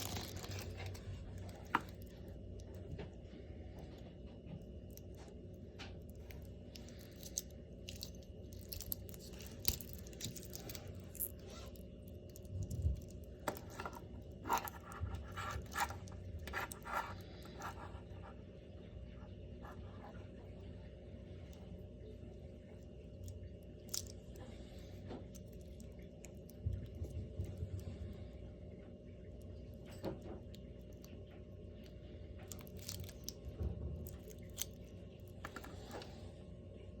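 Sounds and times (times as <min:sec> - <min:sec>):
packaging scraping and crinkling: 0:00.0 - 0:02.1
small clicks and crinkles: 0:00.0 - 0:36.9
low steady hum: 0:00.0 - 0:37.0.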